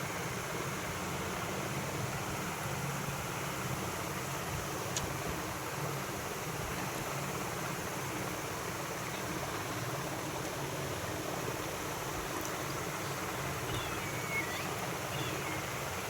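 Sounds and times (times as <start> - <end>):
steady background hiss: 0.0 - 16.0.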